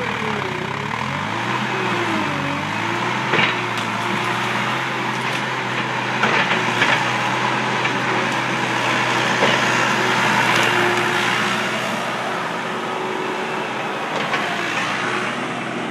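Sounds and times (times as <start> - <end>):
skid steer engine running: 0.0 - 15.9.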